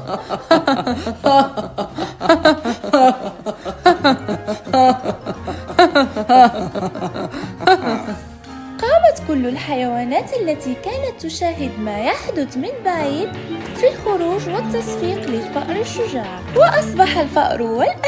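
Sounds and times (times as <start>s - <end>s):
cartoon characters laughing: 0.1s - 8.2s.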